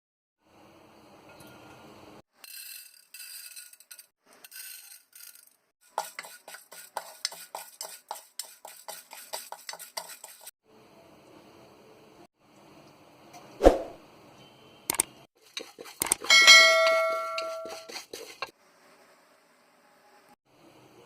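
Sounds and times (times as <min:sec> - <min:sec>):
popcorn kernels rattling in pan: 0:02.4 - 0:10.5, 0:15.4 - 0:18.5.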